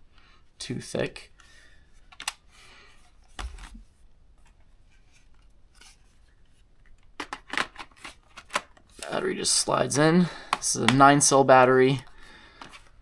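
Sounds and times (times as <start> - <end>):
hard plastic clicks: 2.1 - 2.4.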